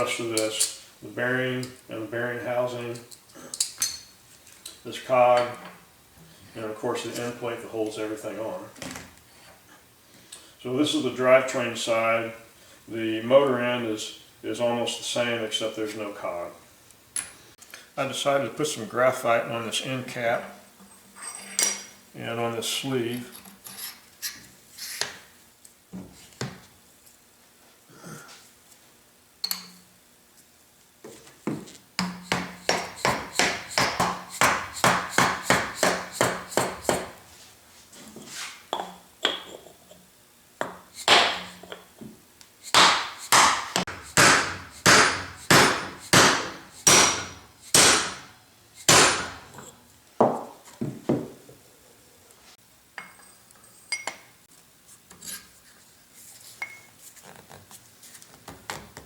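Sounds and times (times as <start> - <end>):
hammer tapping metal: 42.8 - 48.2.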